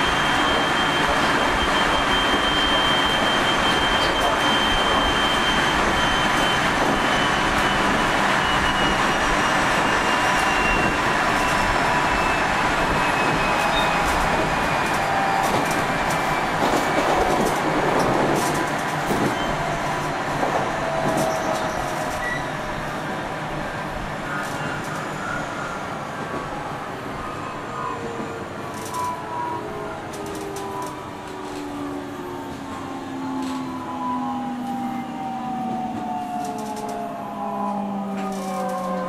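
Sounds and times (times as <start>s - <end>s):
train running noise: 0.0s - 39.0s.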